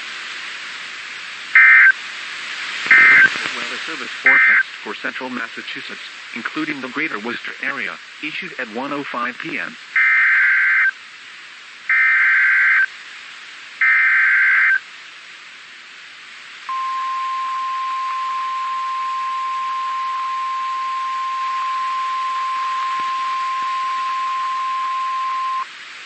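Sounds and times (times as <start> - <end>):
hiss: 0.0 - 10.0
steady warning alarm tone: 1.6 - 1.9, 2.9 - 3.3, 4.3 - 4.6, 10.0 - 10.9, 11.9 - 12.9, 13.8 - 14.8, 16.7 - 25.6
buzzing data tone bursts: 1.6 - 2.0, 2.9 - 3.4, 4.3 - 4.6, 10.0 - 11.0, 11.9 - 12.9, 13.8 - 14.8, 16.7 - 25.7.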